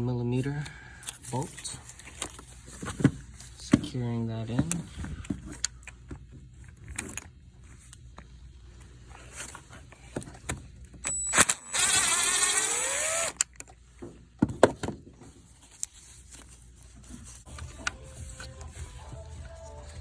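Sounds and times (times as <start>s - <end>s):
power tool motor whine: 11.3s - 13.4s.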